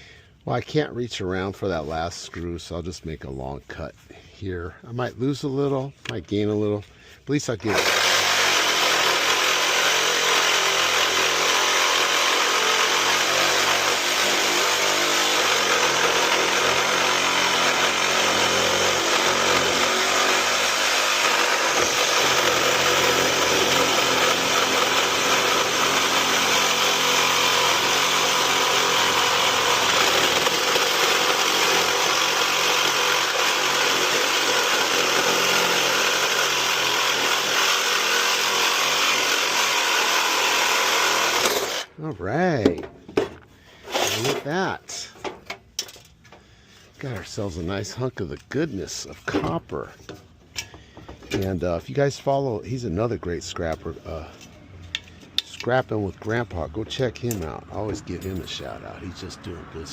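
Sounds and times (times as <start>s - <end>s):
power tool cutting metal: 7.7s - 42.0s.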